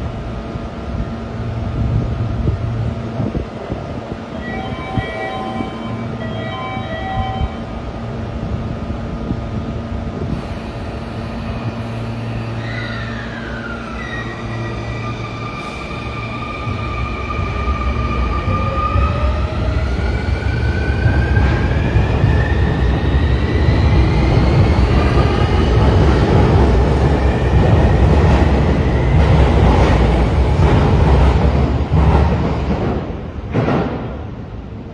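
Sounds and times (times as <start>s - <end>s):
subway train electric hum: 0.0s - 34.9s
train low rumble: 0.0s - 34.9s.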